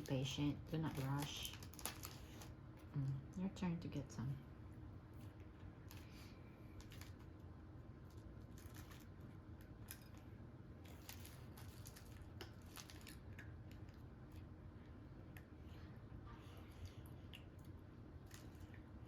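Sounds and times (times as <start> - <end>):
faint clicks and rustles: 0.0 - 3.2.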